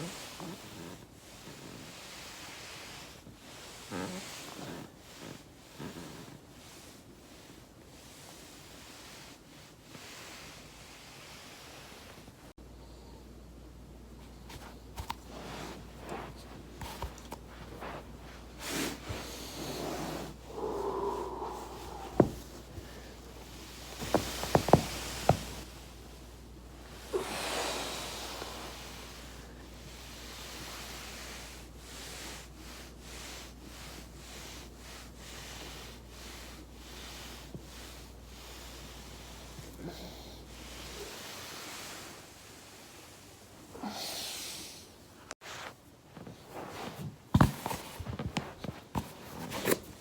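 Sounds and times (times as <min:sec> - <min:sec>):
body rustling on foam roller: 0:00.0 - 0:12.5, 0:14.3 - 0:43.6, 0:45.4 - 0:50.0.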